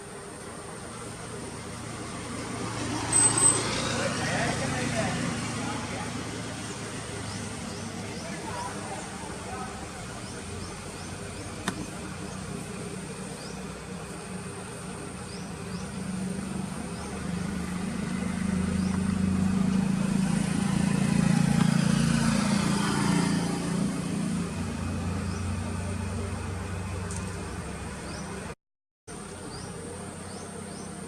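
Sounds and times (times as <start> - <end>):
passing vehicle engine: 1.2 - 11.0, 15.2 - 28.6.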